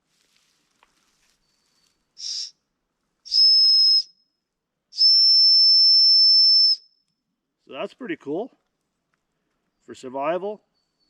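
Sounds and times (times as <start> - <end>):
shrill whistle blasts: 2.2 - 2.5, 3.3 - 4.2, 5.0 - 7.0.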